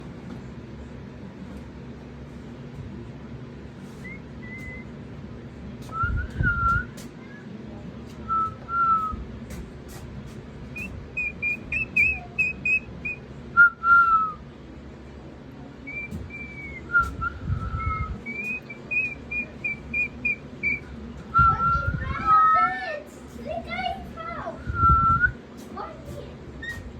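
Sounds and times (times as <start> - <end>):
cockatoo whistling: 4.0 - 5.0, 5.9 - 7.0, 8.2 - 9.2, 10.8 - 14.4, 15.9 - 22.5, 26.6 - 26.9.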